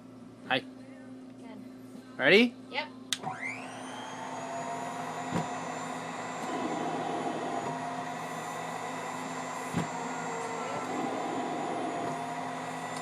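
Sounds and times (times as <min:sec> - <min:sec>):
blower whine: 0:03.1 - 0:13.0.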